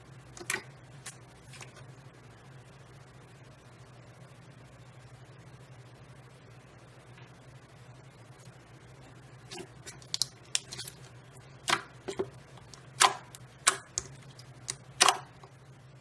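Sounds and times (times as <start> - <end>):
slime squished by hand: 9.5 - 15.4.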